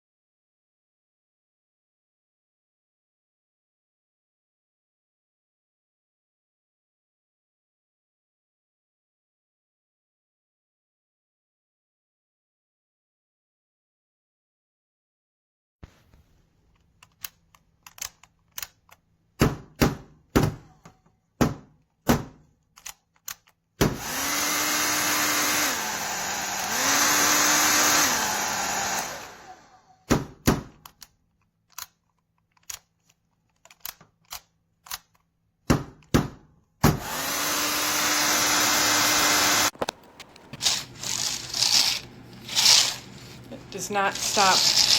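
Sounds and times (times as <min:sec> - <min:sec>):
hair dryer blowing: 0:23.9 - 0:29.8, 0:37.0 - 0:39.9, 0:40.6 - 0:44.9.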